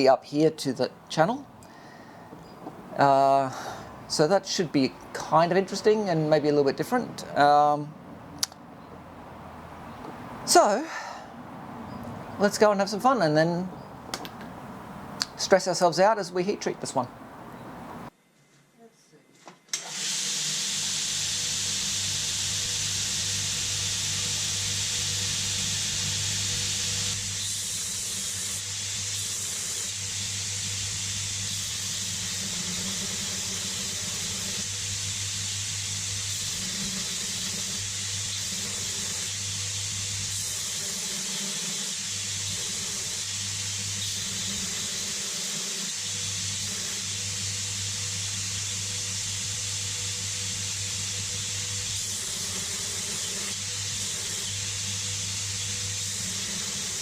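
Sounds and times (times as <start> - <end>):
steady hiss: 0.0 - 8.6, 10.4 - 11.3, 19.8 - 57.0.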